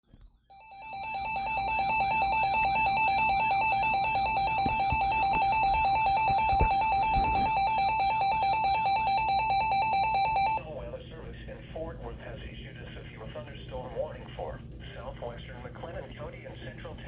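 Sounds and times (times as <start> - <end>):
warbling alarm tone: 0.5 - 10.7.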